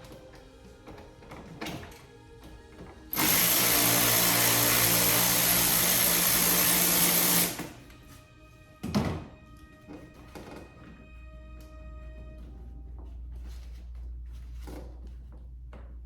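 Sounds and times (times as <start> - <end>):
power drill running: 3.1 - 7.8.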